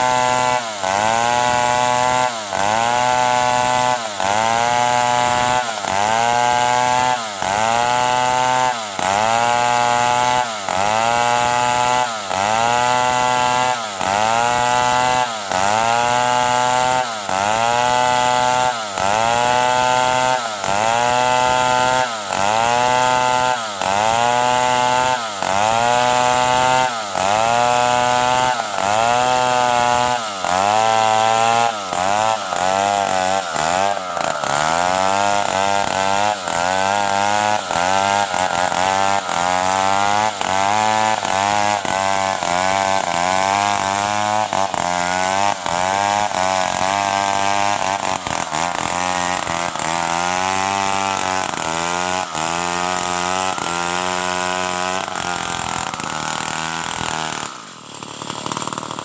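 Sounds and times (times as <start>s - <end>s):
chainsaw cutting wood: 0.0s - 59.0s.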